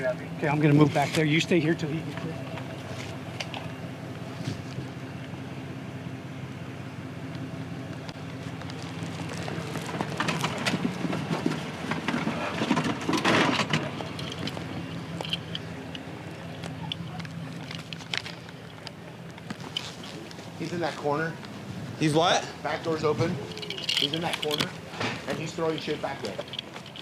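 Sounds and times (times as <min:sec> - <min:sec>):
idling engine hum: 0:00.0 - 0:27.0
rustling and scuffing: 0:04.2 - 0:05.0, 0:08.1 - 0:21.8.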